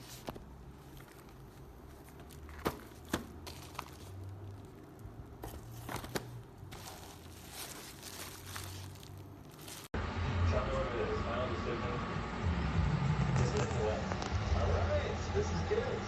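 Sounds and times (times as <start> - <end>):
packaging crinkling and rustling: 0.0 - 9.9
low steady hum: 0.0 - 16.0.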